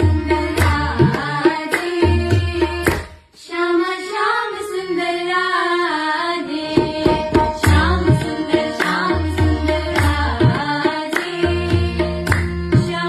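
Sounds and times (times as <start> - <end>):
percussion and deep drum beats: 0.0 - 3.2, 6.7 - 13.0
person singing: 0.0 - 13.0.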